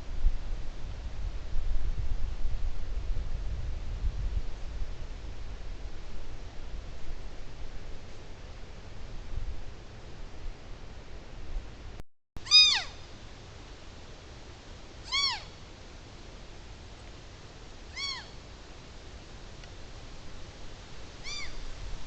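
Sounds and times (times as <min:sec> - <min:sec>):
young deer bleating: 0:12.4 - 0:13.0, 0:15.1 - 0:15.5, 0:17.9 - 0:18.4, 0:21.2 - 0:21.6.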